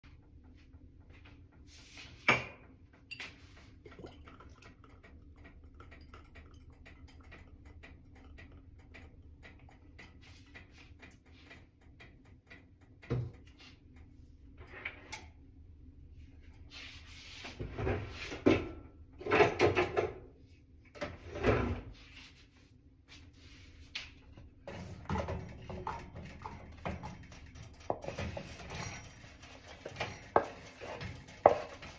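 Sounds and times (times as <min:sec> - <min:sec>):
sharp knocks and clatters: 0:00.1 - 0:14.0, 0:24.4 - 0:31.9.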